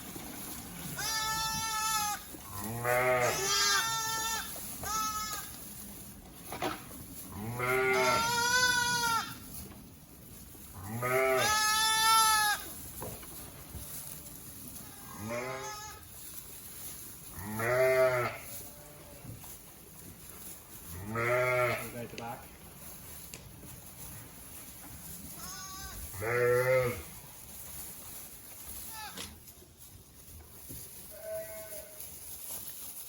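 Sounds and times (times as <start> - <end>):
lambs bleating: 0.9 - 5.6, 7.3 - 9.4, 10.8 - 12.7, 13.8 - 16.1, 17.4 - 19.2, 21.0 - 21.9, 25.4 - 27.1, 28.8 - 29.3, 31.1 - 32.1.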